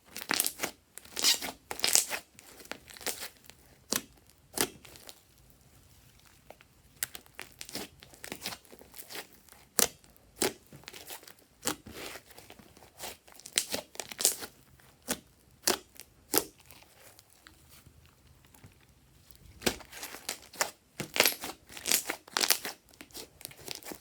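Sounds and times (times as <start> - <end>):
slime crackling and popping: 6.9 - 12.5, 13.4 - 17.5, 19.3 - 24.0.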